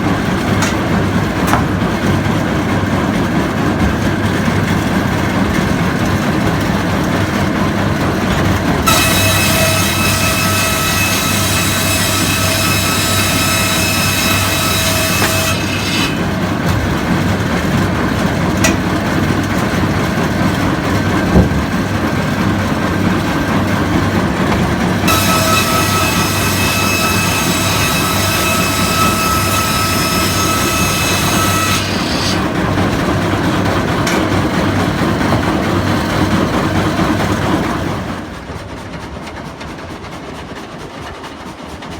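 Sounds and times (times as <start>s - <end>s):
saw cutting log whine: 0.0s - 38.2s
old engine running: 16.2s - 25.1s.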